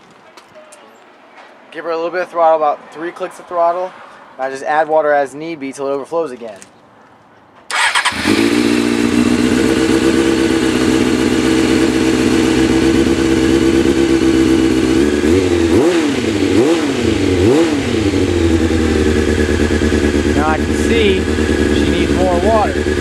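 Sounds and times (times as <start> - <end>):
electric starter cranking: 7.7 - 9.4
motorcycle engine idling: 7.7 - 23.0
motorcycle engine revving: 7.7 - 23.0.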